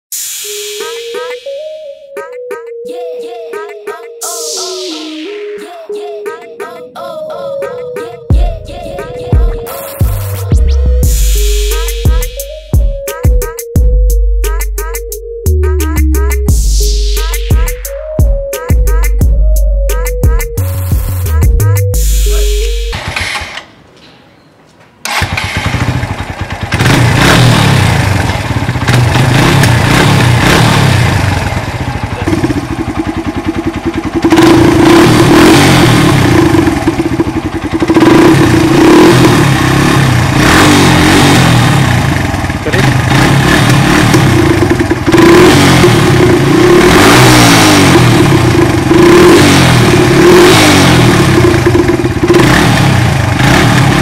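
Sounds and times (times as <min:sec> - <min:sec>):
steady pitched tone: 0:00.1 - 0:23.0
motorcycle engine revving: 0:22.9 - 0:23.7, 0:25.0 - 0:54.0.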